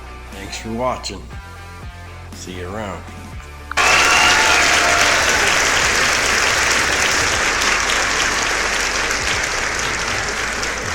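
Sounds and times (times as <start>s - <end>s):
crowd applauding: 3.7s - 10.9s.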